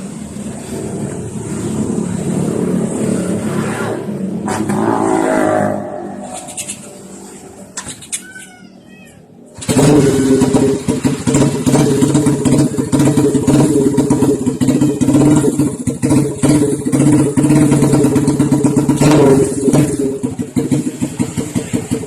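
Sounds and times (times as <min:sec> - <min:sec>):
motorcycle engine starting and running: 0:00.0 - 0:22.0.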